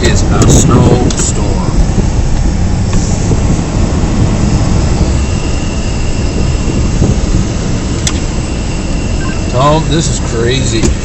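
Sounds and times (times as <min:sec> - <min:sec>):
vehicle engine rumble: 0:00.0 - 0:11.0
faint high whine: 0:04.4 - 0:11.0.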